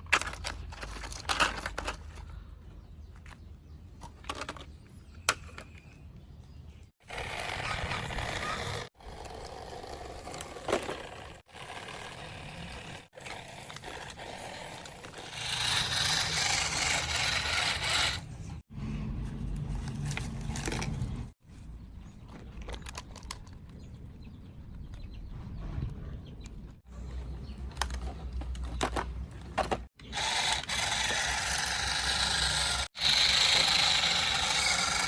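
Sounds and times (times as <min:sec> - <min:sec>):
scraping and rattling over ground: 0:00.0 - 0:05.8, 0:07.0 - 0:35.0
small toy motors running: 0:07.0 - 0:18.6, 0:30.0 - 0:35.0.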